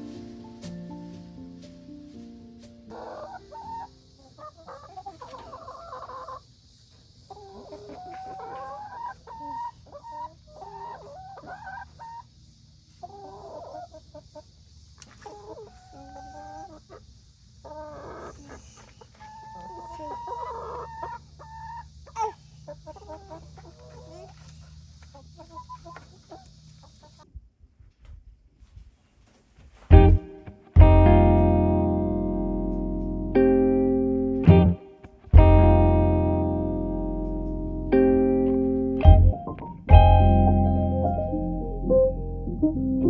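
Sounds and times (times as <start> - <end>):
chickens clucking: 2.1 - 27.3.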